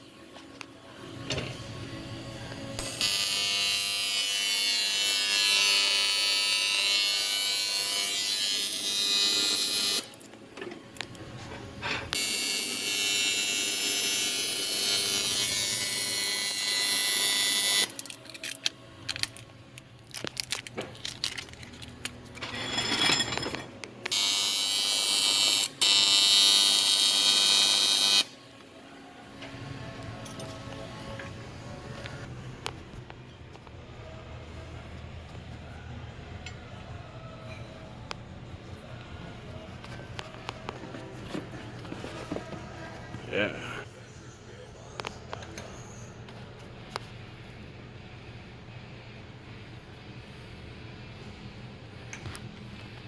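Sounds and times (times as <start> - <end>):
arc welding buzzing crackle: 2.8 - 10.3, 12.1 - 19.4, 24.0 - 28.4.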